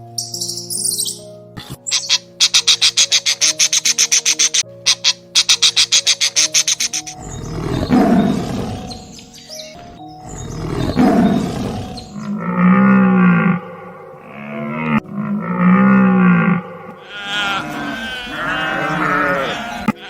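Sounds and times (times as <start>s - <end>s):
bird chirping rapidly: 0.2s - 1.2s, 1.8s - 12.3s
big cat roaring: 7.2s - 9.1s, 10.4s - 20.0s
cow mooing: 10.5s - 20.0s.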